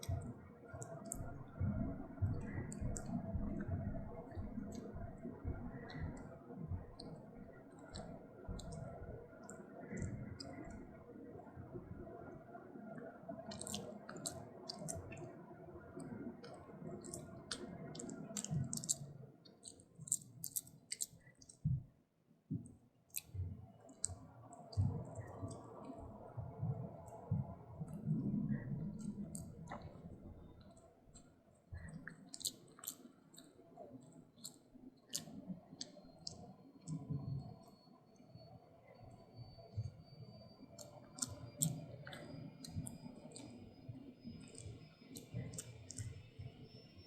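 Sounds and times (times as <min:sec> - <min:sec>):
wet chewing mouth sounds: 0:02.3 - 0:10.9, 0:13.4 - 0:15.3, 0:16.1 - 0:21.6, 0:23.1 - 0:26.0, 0:27.9 - 0:37.1, 0:40.8 - 0:43.6, 0:44.3 - 0:46.4
puppy crunching a treat: 0:13.5 - 0:15.0, 0:17.0 - 0:19.0, 0:19.6 - 0:21.6.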